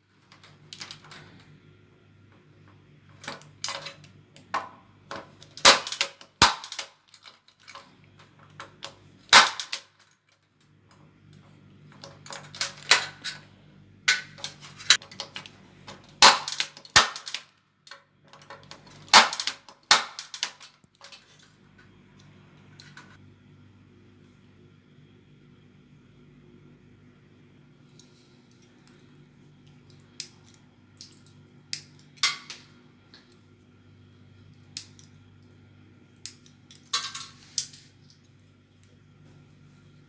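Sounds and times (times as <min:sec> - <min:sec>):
punch-down tool snapping: 0:05.6 - 0:06.9.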